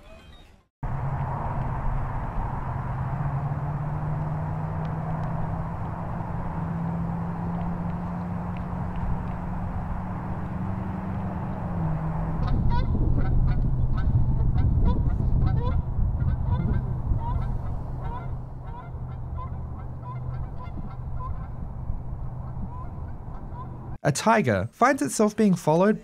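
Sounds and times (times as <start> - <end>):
low engine hum: 0.8 - 24.0
bird calling: 15.5 - 24.0.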